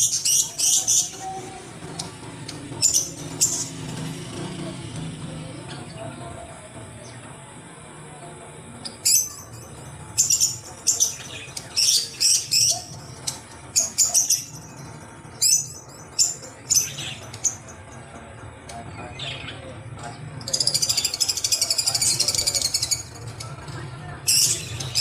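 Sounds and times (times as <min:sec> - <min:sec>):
pet bird chirping: 0:08.8 - 0:17.8, 0:20.4 - 0:23.6.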